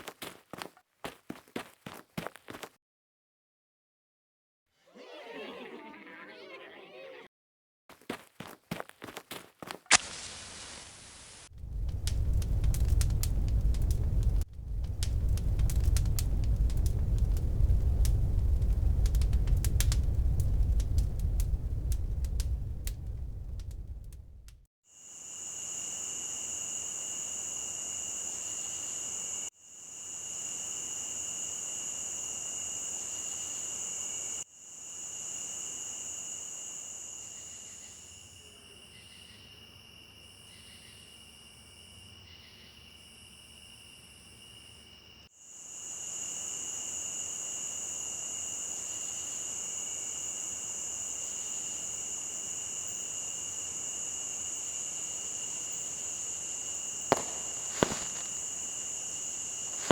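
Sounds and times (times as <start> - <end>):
pulsing insect calls: 4.9 - 7.3, 54.4 - 59.9
crickets trilling: 8.4 - 24.1, 25.0 - 59.9.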